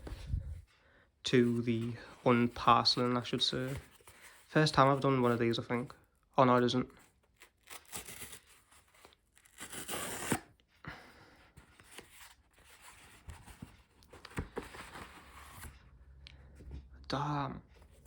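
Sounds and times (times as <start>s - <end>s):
packaging tearing and rustling: 7.3s - 10.5s.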